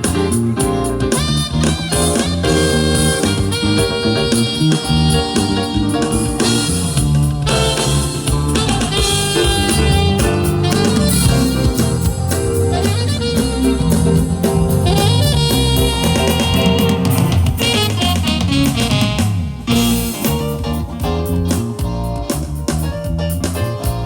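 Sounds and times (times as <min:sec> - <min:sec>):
band playing music: 0:00.0 - 0:24.0
drum kit beat: 0:00.0 - 0:24.0.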